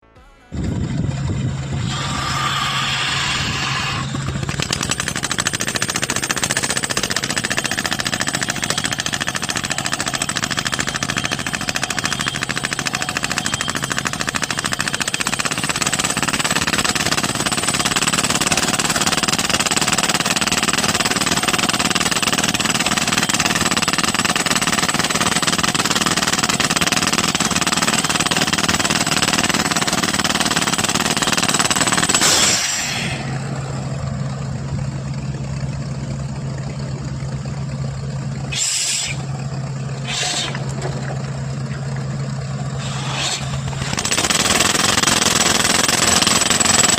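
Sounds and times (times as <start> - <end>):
engine running: 0.2 - 16.8, 31.3 - 46.9
rock drill hammering: 1.9 - 33.5, 42.8 - 46.9.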